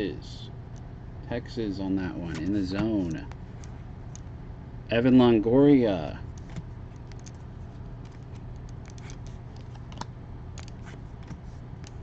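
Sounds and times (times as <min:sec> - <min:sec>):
low steady hum: 0:00.0 - 0:12.0
trading cards flipped and slid: 0:06.4 - 0:12.0.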